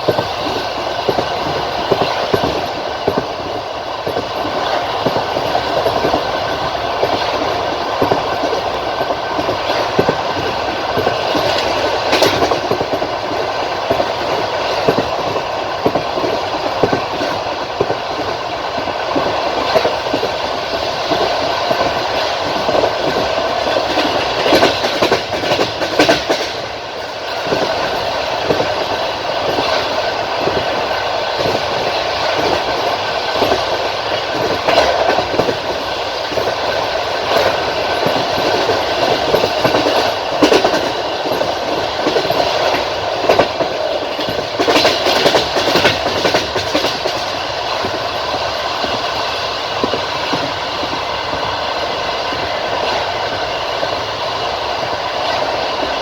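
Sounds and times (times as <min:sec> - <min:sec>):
clickety-clack of rail joints: 0:00.0 - 0:56.0
train wheels rumbling on rails: 0:00.0 - 0:56.0.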